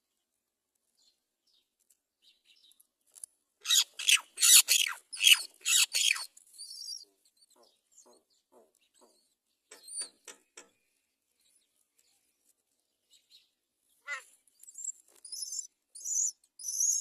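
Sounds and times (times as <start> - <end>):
birds making harsh calls: 3.6 - 7.0.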